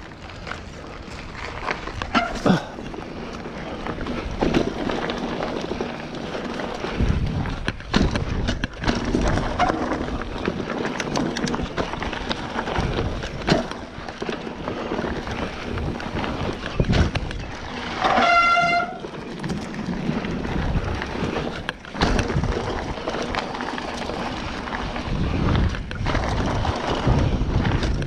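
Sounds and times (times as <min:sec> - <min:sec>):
bike rattling: 0:00.0 - 0:28.0
bike tyres on dirt: 0:00.0 - 0:28.0
wind rumble on microphone: 0:03.8 - 0:14.2, 0:14.9 - 0:28.0.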